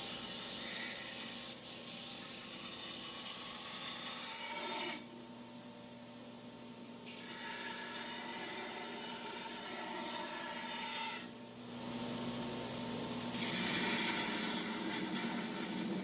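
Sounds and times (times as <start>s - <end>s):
belt grinder grinding steel: 13.3s - 16.0s.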